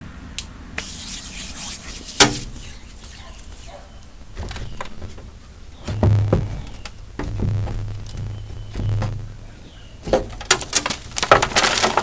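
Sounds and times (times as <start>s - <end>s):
chalk crunching by hand: 0.8s - 4.0s
chalk cracking: 0.8s - 5.2s.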